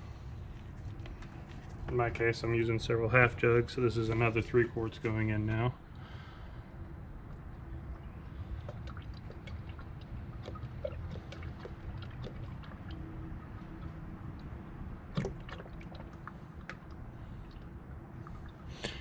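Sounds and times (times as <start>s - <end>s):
motor oil pouring from jug: 7.3s - 19.0s.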